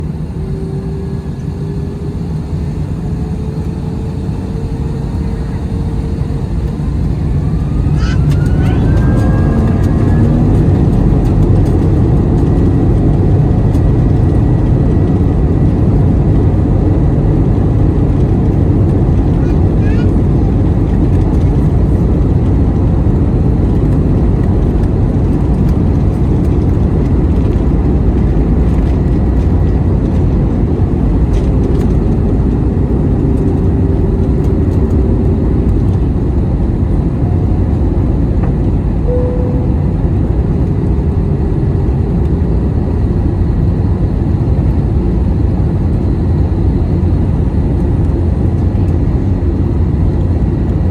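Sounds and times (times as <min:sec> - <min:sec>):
jet engines deep rumble: 0:00.0 - 0:50.9
faint steady tones: 0:39.0 - 0:40.3.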